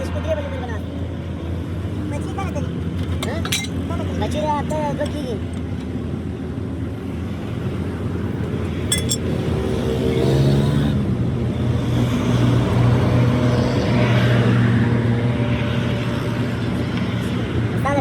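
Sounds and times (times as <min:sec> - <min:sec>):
sharp metallic clink: 0:08.9 - 0:09.3.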